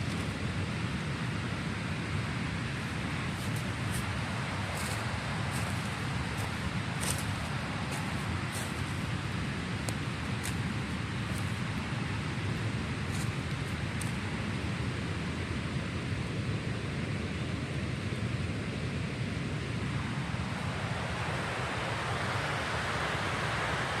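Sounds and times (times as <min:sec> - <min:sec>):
wind rumbling on microphone: 0:00.0 - 0:24.0.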